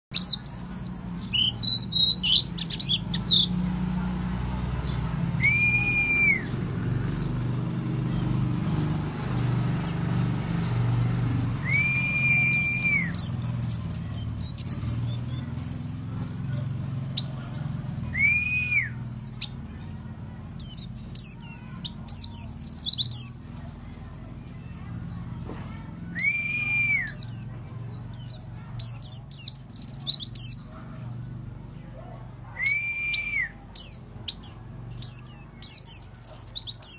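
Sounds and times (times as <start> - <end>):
high twittering bird chirps: 0.1 - 36.9
arched bird whistle: 0.2 - 3.6, 5.3 - 9.1, 11.6 - 17.3, 18.1 - 19.6, 26.0 - 30.6, 32.4 - 36.9
steady low hum: 0.3 - 35.6.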